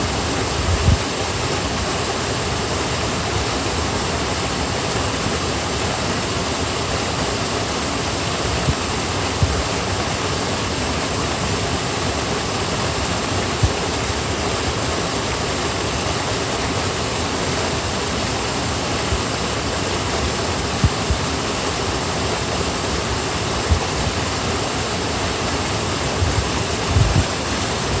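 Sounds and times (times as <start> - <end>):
rushing water: 0.0 - 28.0
low thumps: 26.2 - 27.4.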